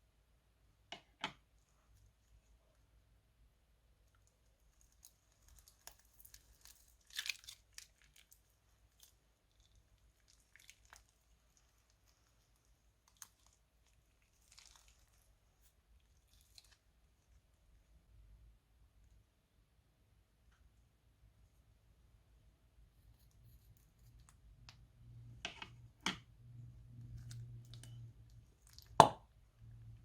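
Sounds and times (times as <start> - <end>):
crunchy slime crackling: 4.6 - 15.3.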